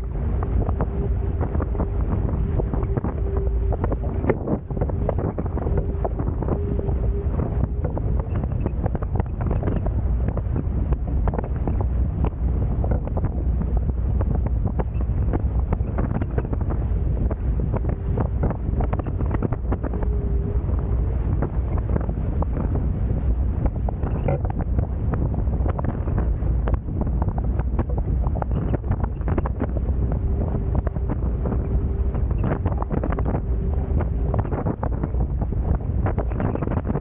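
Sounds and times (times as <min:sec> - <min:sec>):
faint steady hum: 0:00.0 - 0:37.0
water rushing and splashing: 0:00.0 - 0:37.0
wind buffeting microphone: 0:00.0 - 0:37.0.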